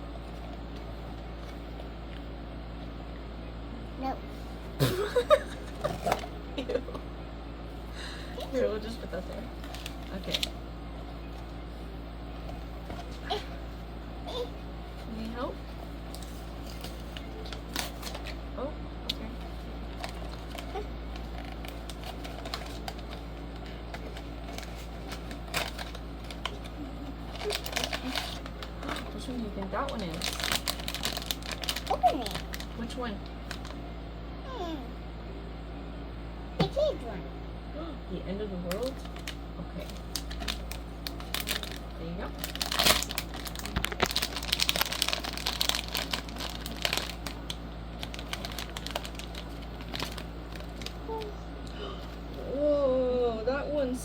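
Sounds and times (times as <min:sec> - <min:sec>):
packaging rustle: 0:09.6 - 0:10.6, 0:16.1 - 0:18.4, 0:19.4 - 0:32.8, 0:33.4 - 0:33.8, 0:38.8 - 0:51.3.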